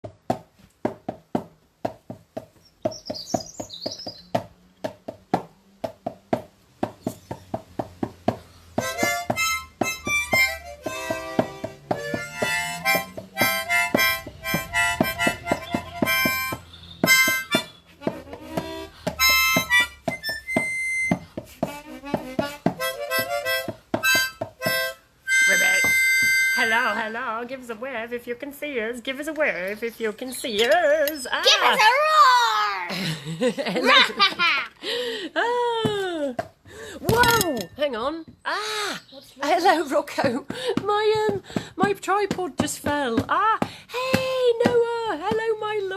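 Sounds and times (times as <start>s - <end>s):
percussive beat: 0.0s - 27.2s, 40.0s - 45.9s
harmonica playing chords: 8.8s - 27.5s.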